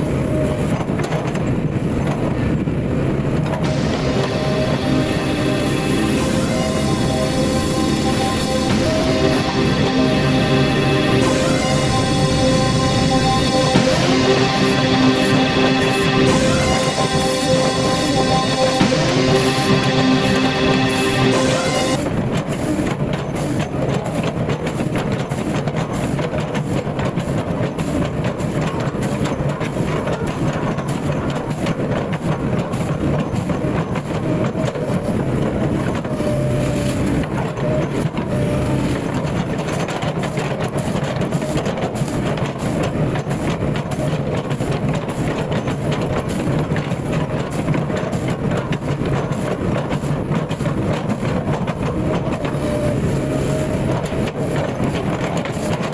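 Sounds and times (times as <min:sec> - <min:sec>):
excavator diesel engine running: 0:03.5 - 0:22.0.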